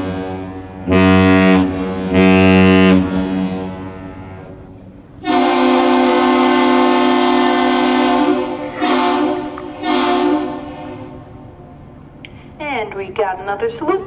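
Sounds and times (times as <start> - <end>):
air horn blasts: 0.0 - 11.2.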